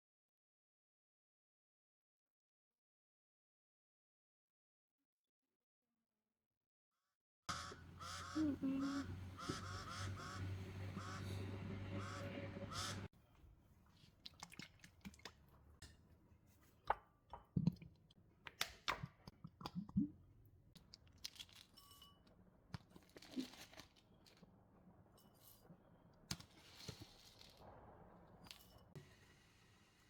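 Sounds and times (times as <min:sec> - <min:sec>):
soft rustle or tearing: 0:23.0 - 0:24.4.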